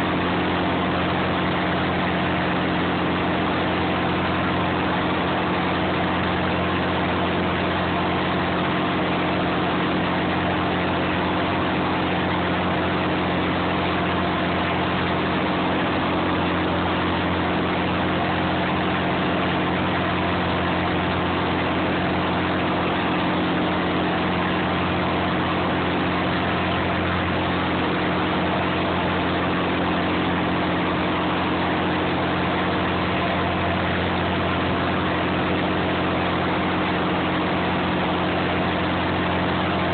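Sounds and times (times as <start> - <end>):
boat engine droning: 0.0 - 39.9.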